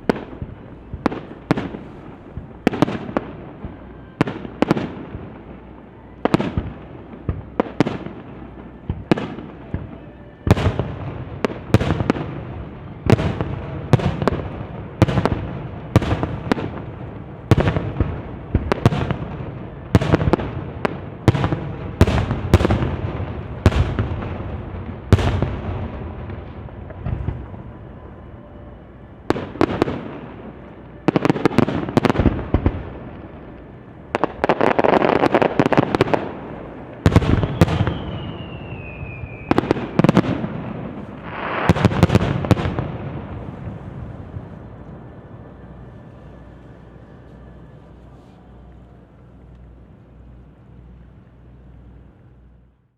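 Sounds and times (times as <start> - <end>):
fireworks bursting with echoing rumble: 0.0 - 48.2.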